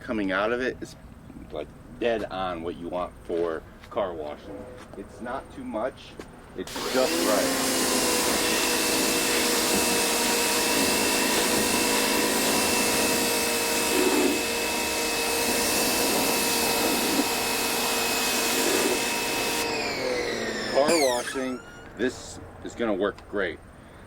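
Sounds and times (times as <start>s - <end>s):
water jet hissing: 6.7s - 22.0s
pressure washer motor whine: 6.7s - 22.3s.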